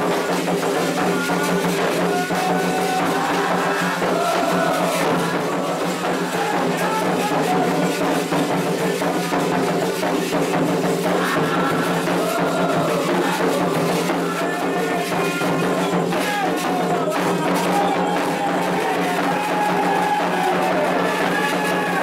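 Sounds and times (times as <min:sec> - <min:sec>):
hand drums and percussion: 0:00.0 - 0:22.0
voices singing a chant: 0:00.0 - 0:22.0.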